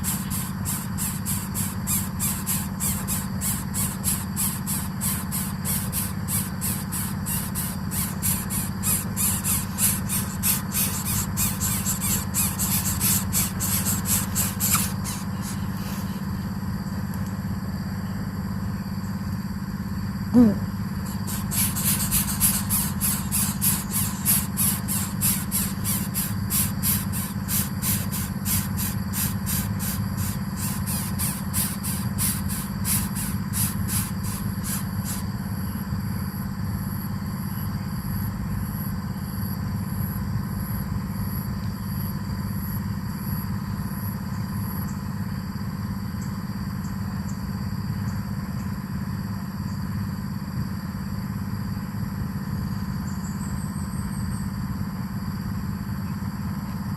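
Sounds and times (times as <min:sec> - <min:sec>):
chicks begging squeals: 0:00.0 - 0:16.2, 0:21.0 - 0:35.3
faint high pulsing: 0:00.0 - 0:16.2, 0:20.4 - 0:35.3
steady low hum: 0:00.0 - 0:49.0.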